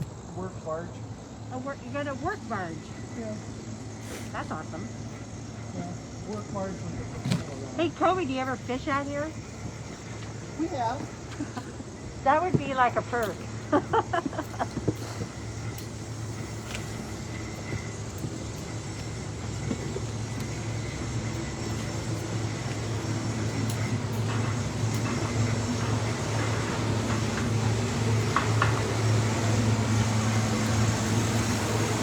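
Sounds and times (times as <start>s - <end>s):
low mechanical hum: 0.0s - 32.0s.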